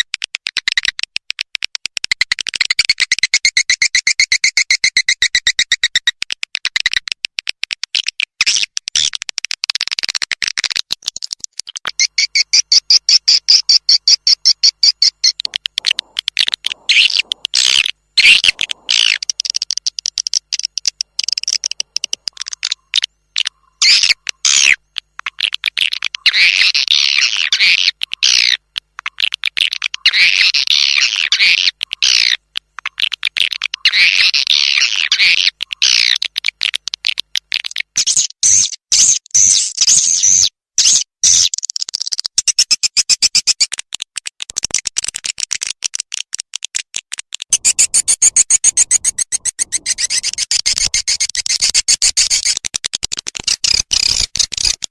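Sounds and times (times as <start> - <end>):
swiftlets chirping and twittering: 11.9 - 28.6, 47.5 - 52.6.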